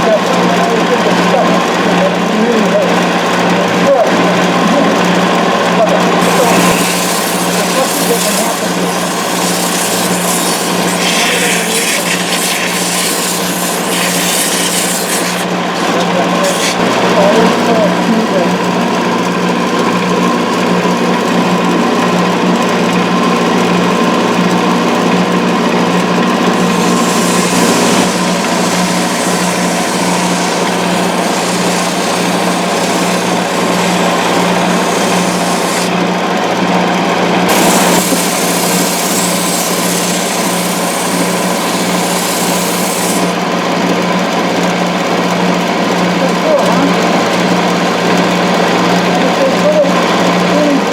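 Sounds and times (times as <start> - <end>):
wood lathe motor hum: 0.0 - 50.9
turning tool scraping wood: 4.5 - 21.3, 24.2 - 43.8.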